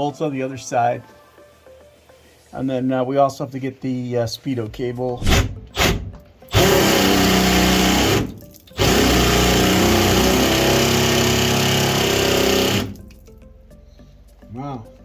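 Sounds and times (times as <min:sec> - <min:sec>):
power tool running: 0:05.4 - 0:13.2.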